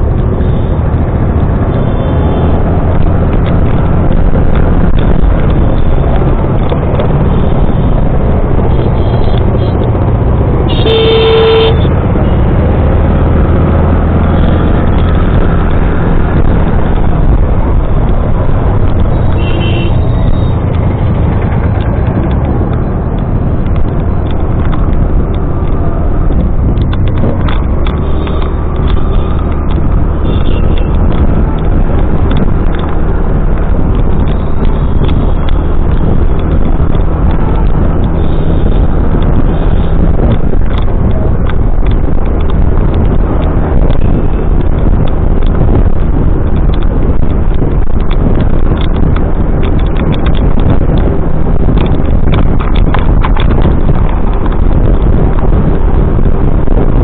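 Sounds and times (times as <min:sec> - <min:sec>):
road and traffic noise: 0:00.0 - 0:57.0
vehicle horn honking: 0:10.7 - 0:11.9, 0:19.3 - 0:20.5.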